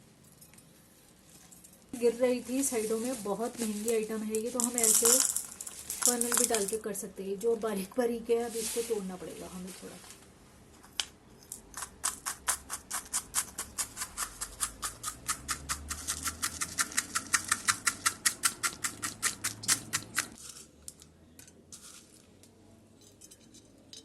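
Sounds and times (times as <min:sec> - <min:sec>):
utensil tapping crystals: 0:03.6 - 0:06.8, 0:11.5 - 0:22.0.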